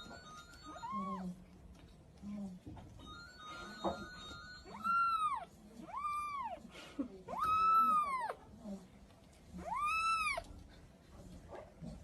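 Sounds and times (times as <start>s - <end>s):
kitten meowing: 7.3s - 8.4s, 9.6s - 10.5s.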